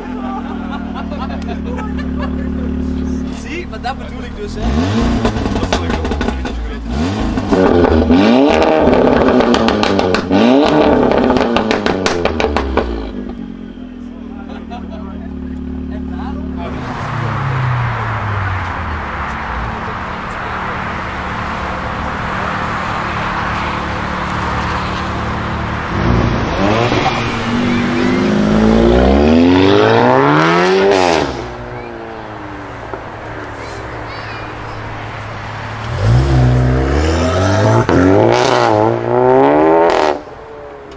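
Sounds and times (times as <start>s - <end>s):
car engine revving: 0.0s - 40.9s
exhaust crackles and pops: 5.0s - 13.4s.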